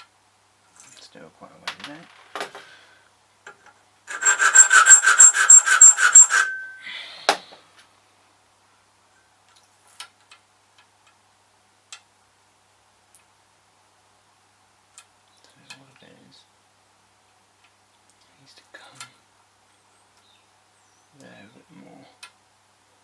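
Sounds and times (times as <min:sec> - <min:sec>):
metal file rasping on key: 0:04.1 - 0:06.8.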